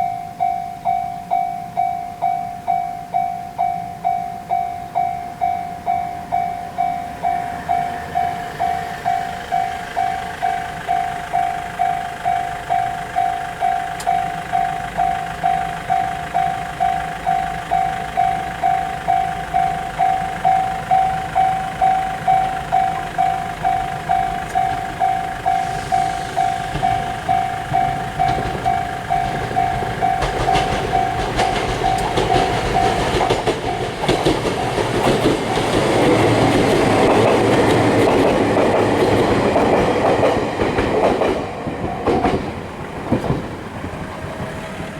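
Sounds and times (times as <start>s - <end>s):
level crossing alarm ringing: 0.0s - 44.9s
train rumble: 0.0s - 44.9s
train wheels clattering: 5.3s - 44.9s.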